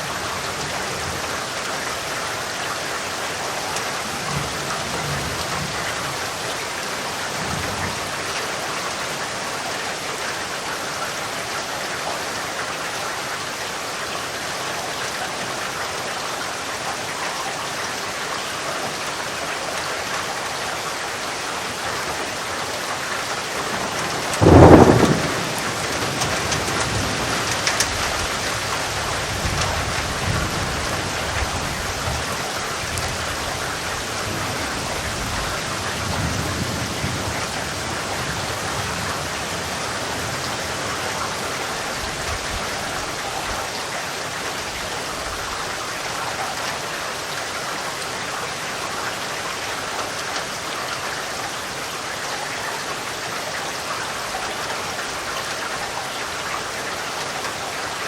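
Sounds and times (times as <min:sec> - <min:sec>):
steady rain: 0:00.0 - 0:58.0
thunderclap: 0:23.6 - 0:28.3
low thunder rumbling: 0:23.6 - 0:41.2.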